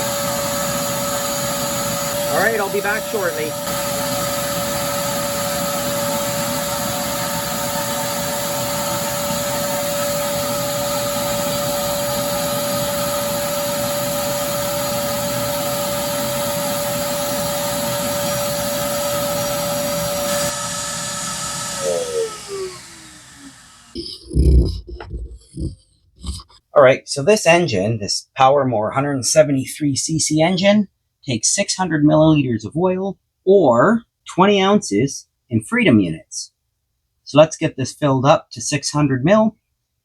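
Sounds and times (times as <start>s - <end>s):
oil extraction pump whining: 0.0s - 24.0s.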